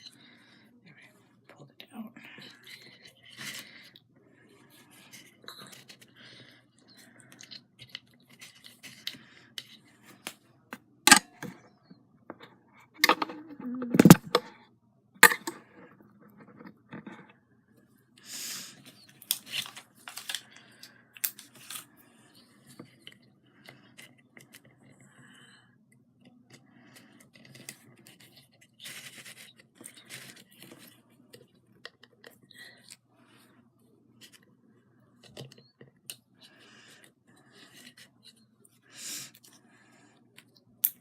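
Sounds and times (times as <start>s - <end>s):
craft work clicks and rustles: 19.2s - 21.9s.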